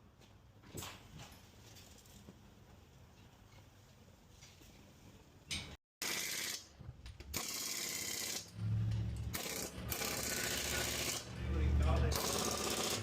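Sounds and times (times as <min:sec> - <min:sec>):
pneumatic impact wrench hammering: 0:06.0 - 0:08.5, 0:09.3 - 0:11.3, 0:12.1 - 0:13.0.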